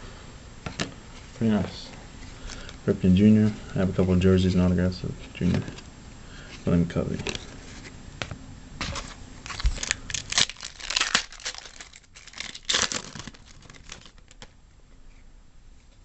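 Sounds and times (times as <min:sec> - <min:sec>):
foil wrapper crinkling and tearing: 0:08.8 - 0:14.6.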